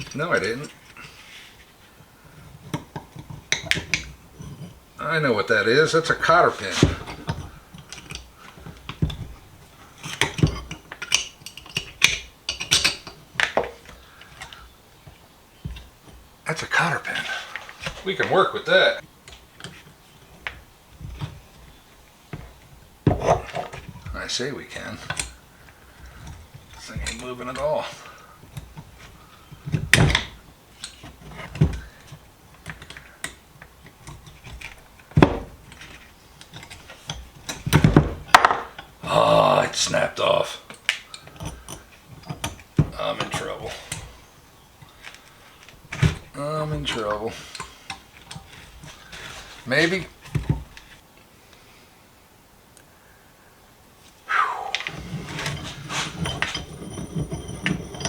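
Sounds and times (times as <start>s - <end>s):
metal tools clinking on vise: 10.0s - 14.6s, 54.9s - 58.0s.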